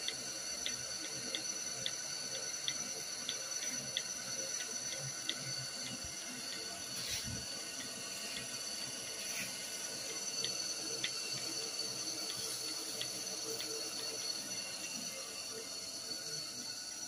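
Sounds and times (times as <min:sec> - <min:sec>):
small ticks: 0:00.0 - 0:09.5
high machine whine: 0:00.0 - 0:17.0.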